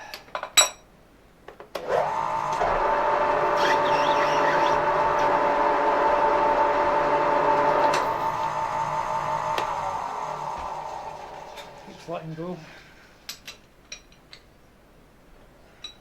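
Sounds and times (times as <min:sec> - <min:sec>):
clicks: 0:01.8 - 0:11.8
lathe motor whining: 0:01.8 - 0:12.7.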